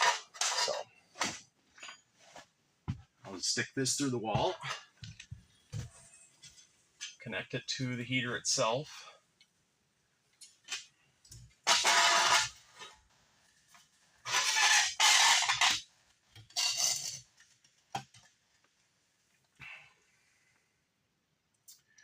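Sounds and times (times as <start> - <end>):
metal pipe scraping through flange: 14.3 - 15.7.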